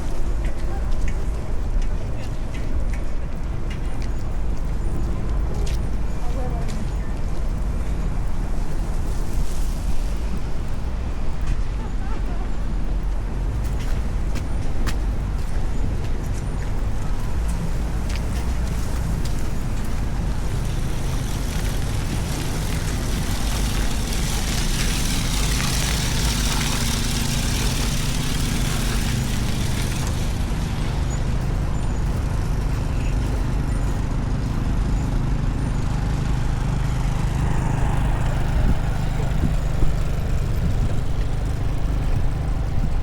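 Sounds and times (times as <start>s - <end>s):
city traffic: 0.0s - 43.0s
large vehicle engine running: 0.0s - 43.0s
broad hiss: 20.1s - 31.1s.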